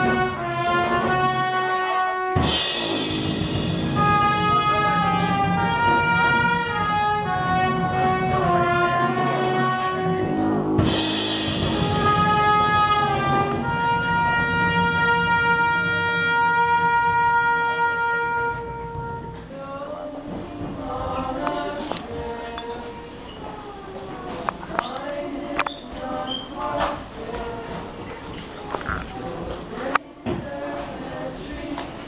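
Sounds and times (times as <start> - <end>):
brass band playing slow melody: 0.0 - 23.3
cymbal crash: 2.4 - 4.5, 10.8 - 12.2.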